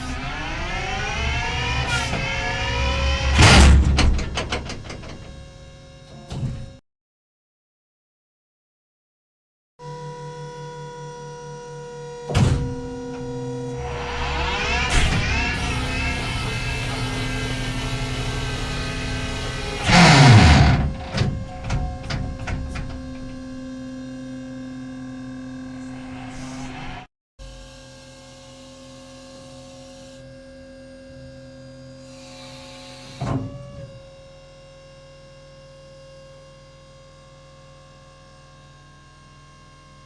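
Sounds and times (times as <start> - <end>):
turret drive whine: 0.0 - 6.2, 9.8 - 27.9.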